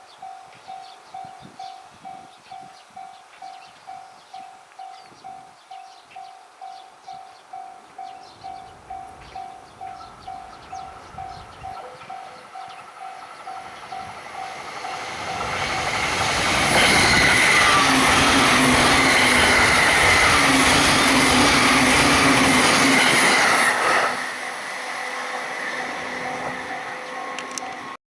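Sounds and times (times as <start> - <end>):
train wheels rushing on rails: 8.4 - 28.0.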